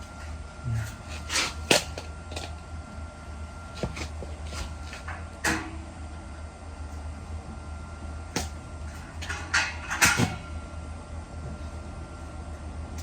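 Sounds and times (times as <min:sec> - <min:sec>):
steady low hum: 0:00.0 - 0:13.0
metal bed frame parts clanking: 0:09.1 - 0:10.5.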